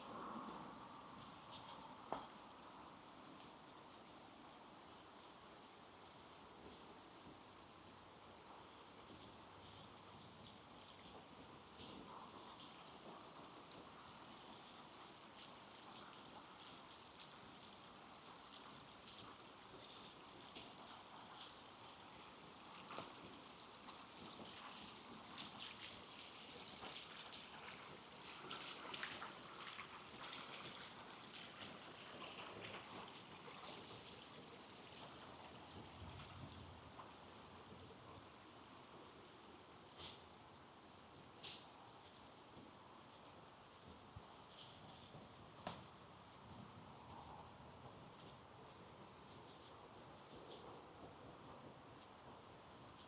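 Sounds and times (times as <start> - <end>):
small crackles and ticks: 0.0 - 53.0.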